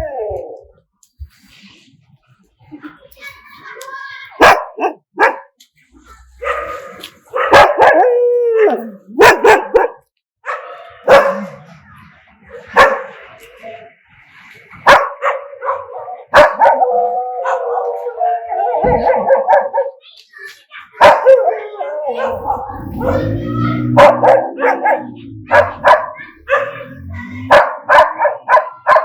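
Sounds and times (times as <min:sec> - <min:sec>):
dogs howling: 0:00.0 - 0:00.7, 0:06.3 - 0:11.6, 0:14.9 - 0:20.0, 0:21.0 - 0:29.0
dogs barking: 0:04.4 - 0:05.6, 0:06.2 - 0:11.7, 0:12.4 - 0:13.3, 0:14.8 - 0:20.0, 0:20.8 - 0:29.0.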